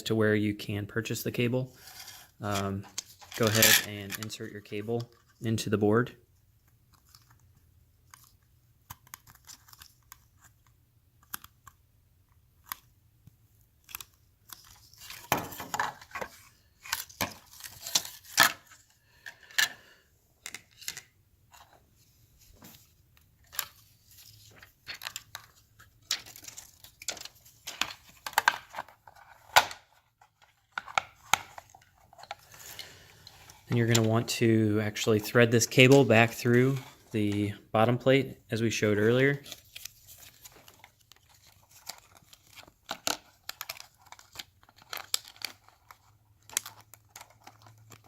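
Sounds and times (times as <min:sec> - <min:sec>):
scraping and crinkling: 0:01.7 - 0:04.4, 0:13.9 - 0:34.2, 0:39.0 - 0:48.0
plastic clicks and rustles: 0:06.6 - 0:21.8, 0:22.4 - 0:34.3, 0:39.4 - 0:48.0.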